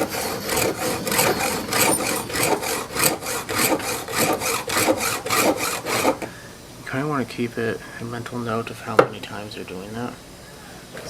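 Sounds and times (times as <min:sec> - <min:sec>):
file rasping on chainsaw chain: 0:00.0 - 0:06.3.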